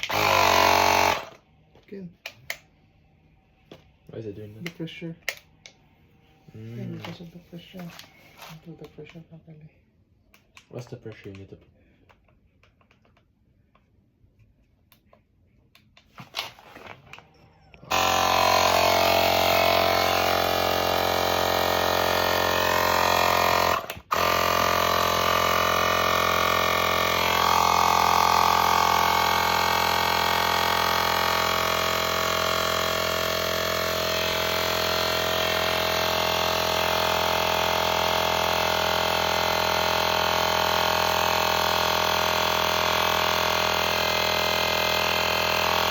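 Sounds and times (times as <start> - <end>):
electric air pump running: 0.0 - 1.4, 17.9 - 45.9.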